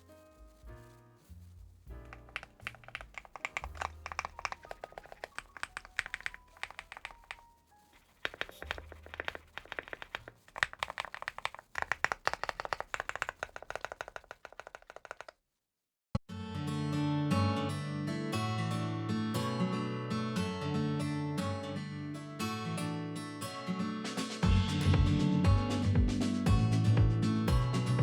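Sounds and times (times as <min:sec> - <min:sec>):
mechanical keyboard typing: 0:02.1 - 0:15.4.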